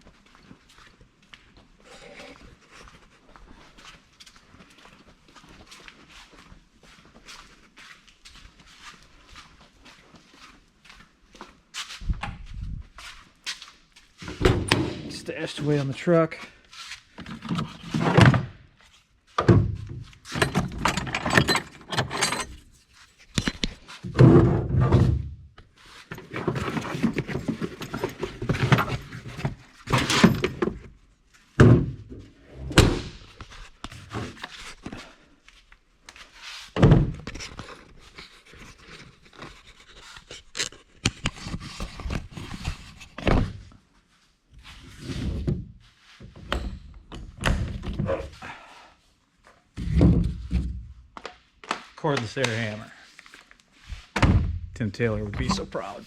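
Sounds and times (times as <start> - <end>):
tools and metal parts clattering: 19.5 - 24.6, 26.0 - 30.9, 55.4 - 56.0.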